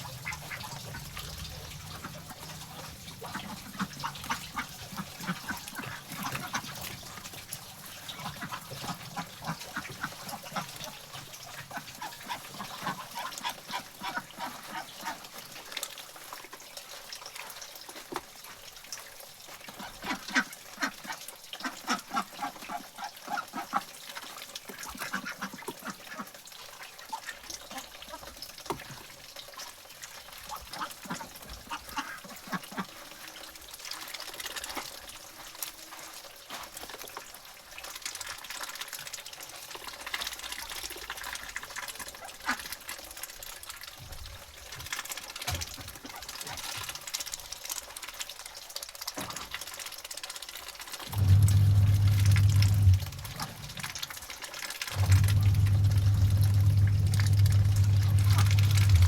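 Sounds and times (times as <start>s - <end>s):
ducks quacking: 0.0s - 6.9s.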